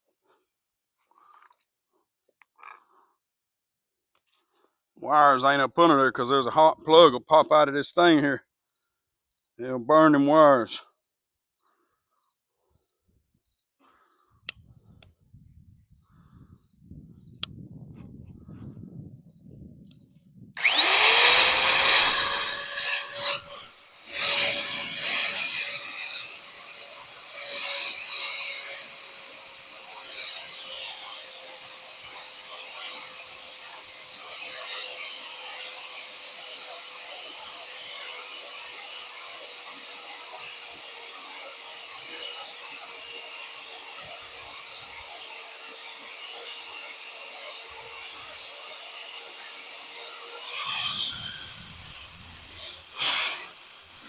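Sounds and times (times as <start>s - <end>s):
electric drill whining: 20.6s - 54.0s
hole cutter cutting steel: 20.6s - 54.0s.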